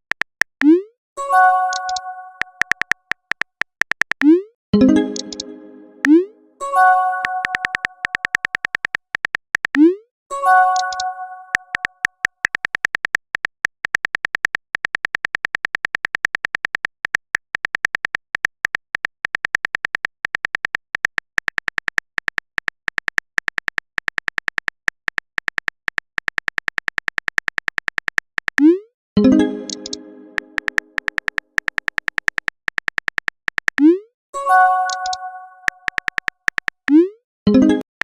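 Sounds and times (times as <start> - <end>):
electronic keyboard typing ticks: 0.0 - 37.9
pitched chime: 4.8 - 8.0, 34.4 - 35.9.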